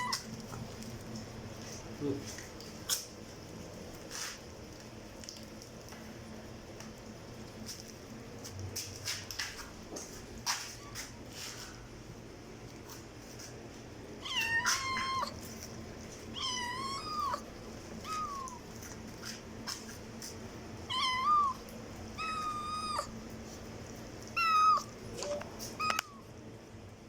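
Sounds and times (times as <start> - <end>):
cat meowing loudly: 0.0 - 0.3, 14.2 - 15.4, 16.3 - 17.4, 18.0 - 18.6, 20.9 - 21.6, 22.2 - 23.1, 24.3 - 24.9, 25.7 - 26.2.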